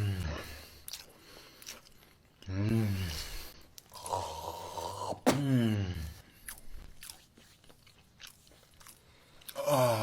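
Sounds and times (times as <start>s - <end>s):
wet chewing crunches: 6.4s - 9.7s.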